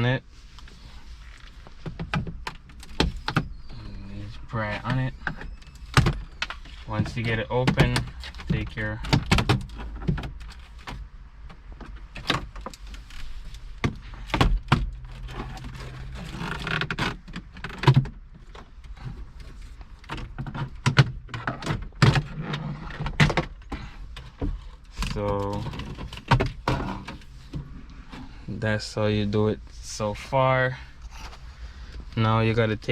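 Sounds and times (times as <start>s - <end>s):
plastic panel scraping: 12.2s - 28.4s.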